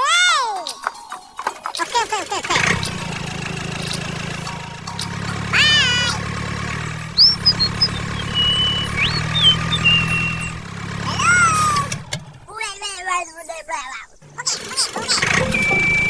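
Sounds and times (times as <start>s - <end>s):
small motor humming: 2.0s - 12.2s
high whistled chirps: 7.2s - 10.7s, 15.2s - 16.0s.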